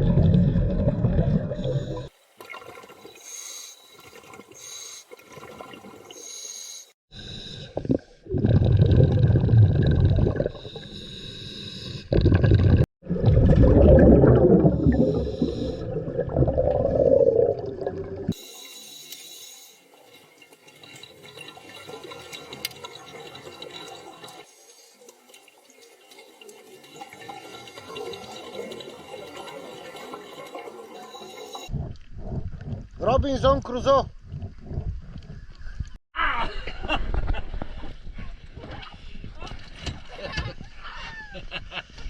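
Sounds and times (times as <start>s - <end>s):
rush of bubbles: 0.0s - 3.2s, 7.8s - 10.7s, 12.1s - 18.4s
regulator hiss on inhale: 3.0s - 5.2s, 6.1s - 7.6s, 10.6s - 12.1s, 18.4s - 19.9s.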